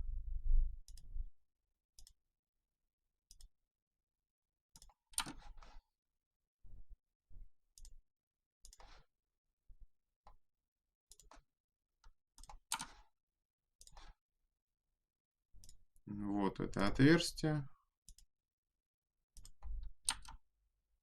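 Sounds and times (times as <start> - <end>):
computer mouse clicks: 0.8 - 1.1, 4.8 - 5.8, 8.6 - 9.0, 12.4 - 13.1, 19.4 - 20.4.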